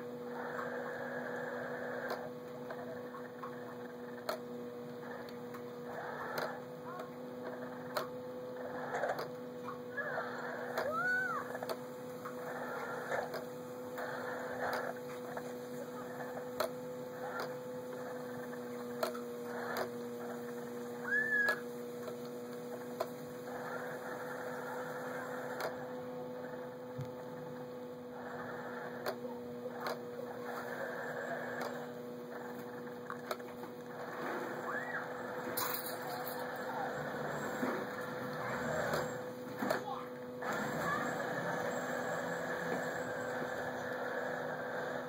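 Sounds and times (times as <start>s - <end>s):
electrical hum: 0.0s - 45.0s
clicks: 31.5s - 34.3s.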